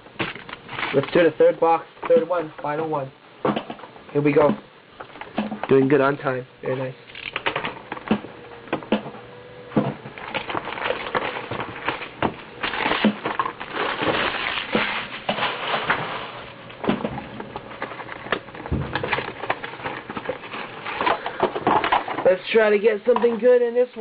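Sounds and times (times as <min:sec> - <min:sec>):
packaging crackling and rustling: 0:00.1 - 0:02.4, 0:07.0 - 0:08.4, 0:10.1 - 0:22.7
wrappers being torn: 0:10.2 - 0:16.6.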